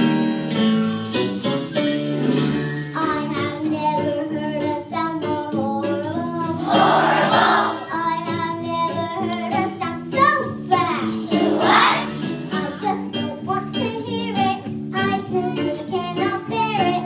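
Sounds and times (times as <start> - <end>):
instrumental accompaniment: 0.0 - 17.0
children singing: 6.5 - 8.1, 11.3 - 12.8.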